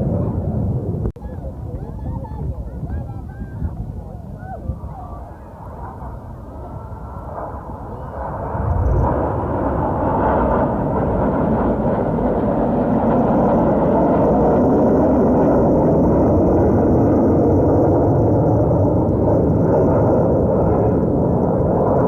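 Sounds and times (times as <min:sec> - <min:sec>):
jets flying past: 0:05.2 - 0:22.0.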